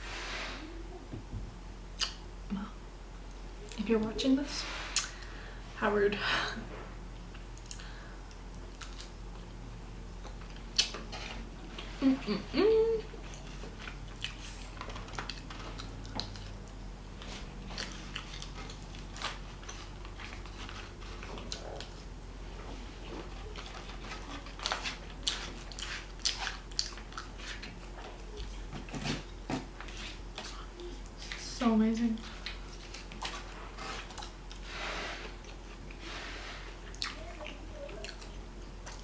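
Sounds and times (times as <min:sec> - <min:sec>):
soft crunches of food: 0:07.2 - 0:12.0, 0:13.2 - 0:29.0
chewing with wet mouth smacks: 0:13.2 - 0:20.6, 0:23.5 - 0:28.6, 0:32.2 - 0:34.6, 0:36.8 - 0:39.0.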